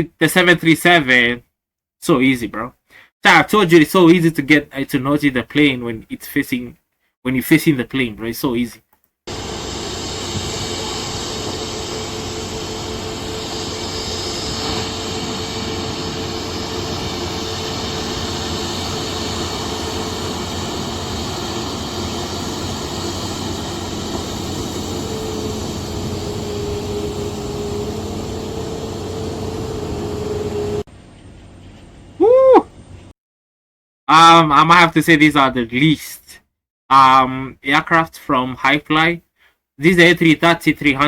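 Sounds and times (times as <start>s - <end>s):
jet engines roaring: 9.3s - 30.9s
jet engine whine: 9.3s - 33.0s.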